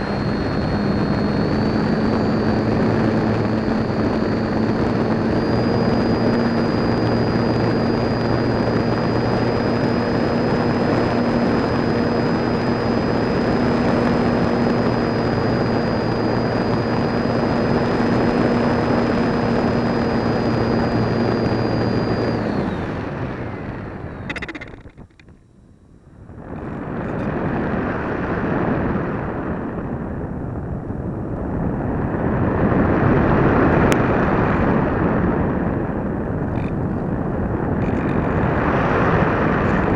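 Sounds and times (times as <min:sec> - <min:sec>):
loud wind rush: 0:00.0 - 0:25.1, 0:26.2 - 0:39.9
electric motor and propeller whirring: 0:00.0 - 0:39.9.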